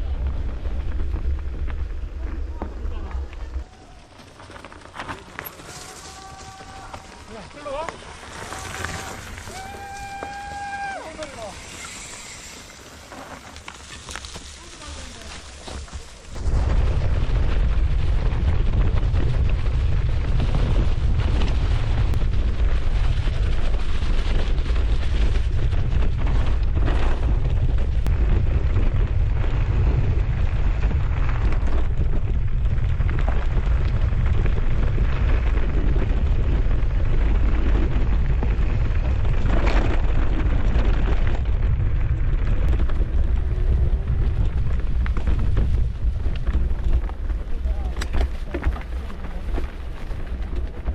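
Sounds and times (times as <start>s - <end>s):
bike trail noise: 0.0s - 50.9s
wind buffeting microphone: 16.3s - 50.9s.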